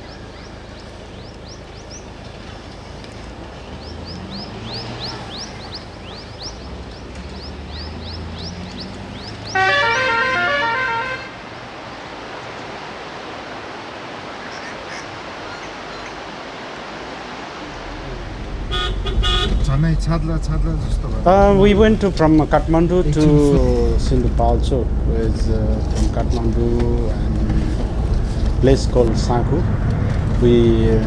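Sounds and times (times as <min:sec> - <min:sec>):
vehicle engine running: 0:00.0 - 0:09.6, 0:17.6 - 0:31.0
musical vehicle horn: 0:09.5 - 0:11.4, 0:18.6 - 0:19.8.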